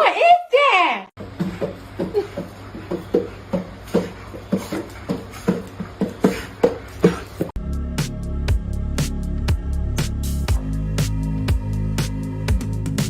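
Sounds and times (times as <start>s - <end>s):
music: 7.6s - 13.0s.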